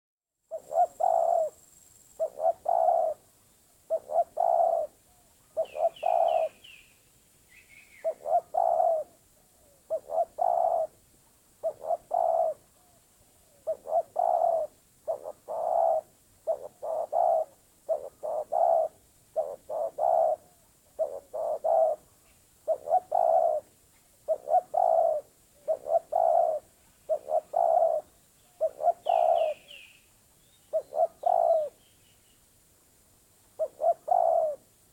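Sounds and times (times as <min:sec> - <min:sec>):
dove cooing: 0:00.5 - 0:01.6, 0:02.2 - 0:06.9, 0:07.5 - 0:11.0, 0:11.6 - 0:31.8, 0:33.5 - 0:34.7
small bird chirping: 0:00.5 - 0:10.9, 0:21.0 - 0:32.5.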